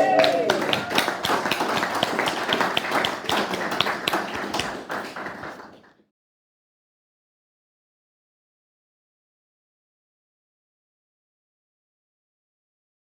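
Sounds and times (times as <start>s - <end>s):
audience applauding: 0.0s - 6.0s.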